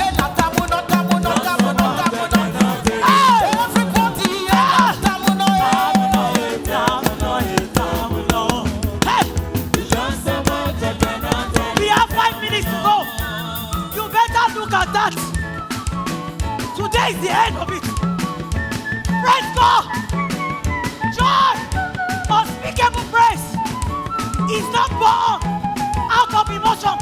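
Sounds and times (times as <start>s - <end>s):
singers and congregation singing: 0.0s - 22.0s
band playing upbeat gospel music: 0.0s - 27.0s.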